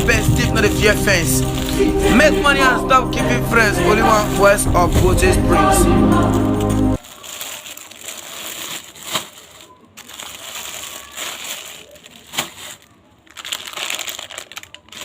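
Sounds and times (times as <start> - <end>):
crinkling packaging handling: 7.0 - 15.0.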